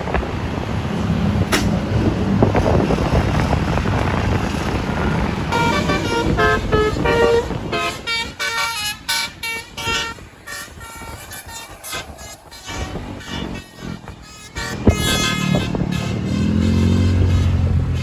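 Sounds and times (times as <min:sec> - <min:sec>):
bus engine and road rumble: 0:00.0 - 0:18.0
horn playing a melody: 0:05.4 - 0:17.8.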